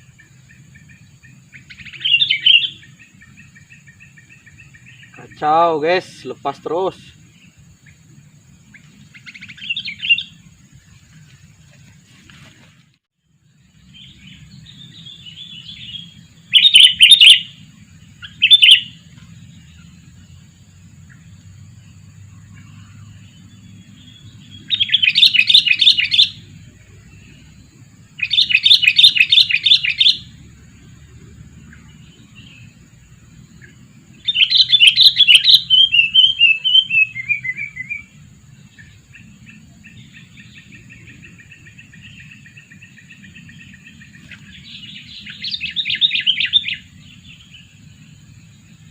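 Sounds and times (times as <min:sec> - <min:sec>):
faint bird calling: 0:00.0 - 0:06.4, 0:13.8 - 0:20.4, 0:22.2 - 0:30.4, 0:33.5 - 0:48.1
bird chattering calls: 0:00.0 - 0:08.0, 0:08.6 - 0:10.6, 0:14.0 - 0:19.1, 0:22.4 - 0:26.5, 0:28.1 - 0:30.4, 0:33.6 - 0:47.7.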